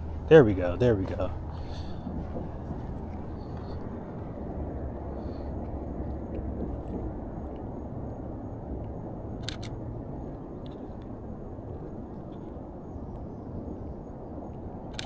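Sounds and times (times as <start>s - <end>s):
low outdoor rumble: 0.0s - 15.0s
camera shutter double click: 9.4s - 9.8s.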